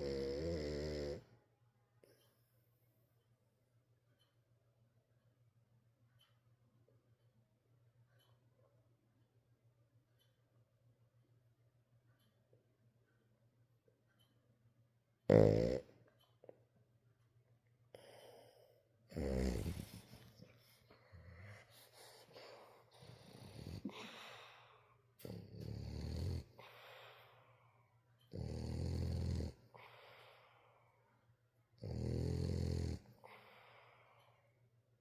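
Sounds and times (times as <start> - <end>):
dog snoring: 0.0 - 1.3, 15.3 - 15.9, 19.1 - 24.4, 25.2 - 27.0, 28.3 - 29.9, 31.8 - 33.4
wheezy breaths: 17.9 - 25.6, 26.4 - 28.0, 29.5 - 31.2, 33.1 - 34.6.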